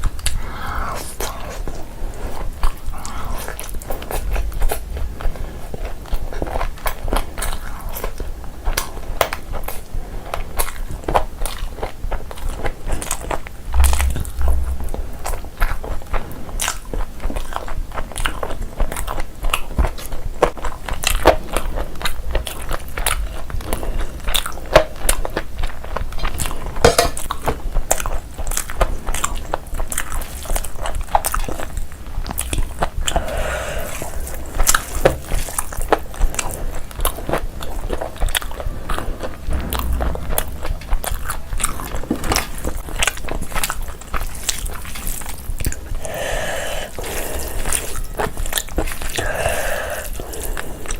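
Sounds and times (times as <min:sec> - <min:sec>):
person chewing and crunching food: 0:00.0 - 0:50.9.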